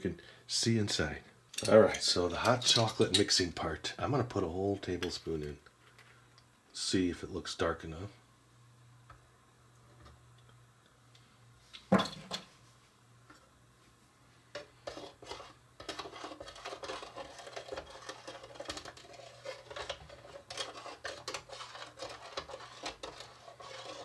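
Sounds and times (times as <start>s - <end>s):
spoon scraping and clicking: 14.6s - 24.0s.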